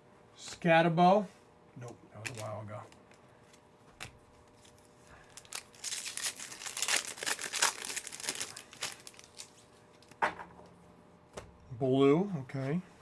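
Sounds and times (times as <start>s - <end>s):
foil wrapper tearing and crinkling: 2.2s - 3.2s, 4.5s - 9.6s.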